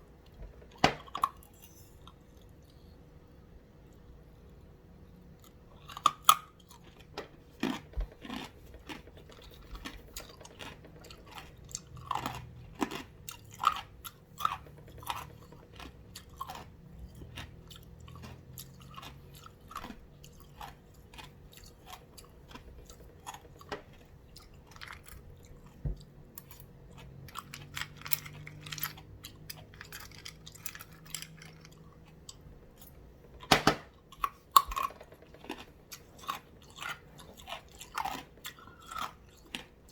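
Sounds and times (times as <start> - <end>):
ice crunching while chewed: 5.4 - 32.9, 34.1 - 39.9.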